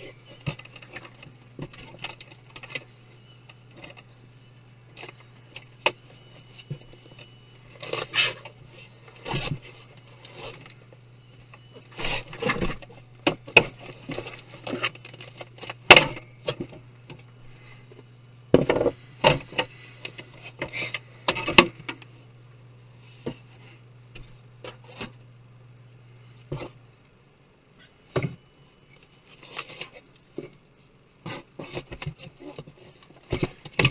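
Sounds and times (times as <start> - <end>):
steady low hum: 0.0 - 33.9
scraping and rubbing: 7.8 - 10.8.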